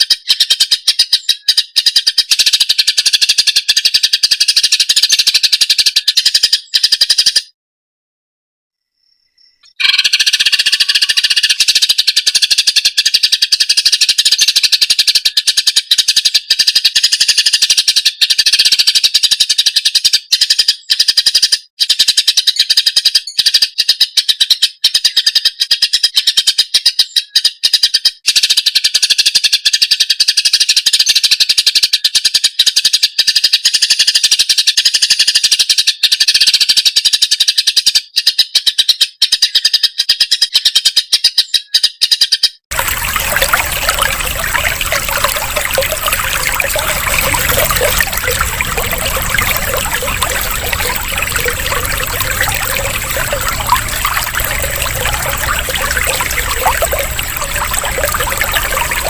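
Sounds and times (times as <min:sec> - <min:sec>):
bird chattering chirps: 0:09.6 - 0:17.1
trickling water: 0:09.8 - 0:15.2, 0:42.7 - 0:59.0.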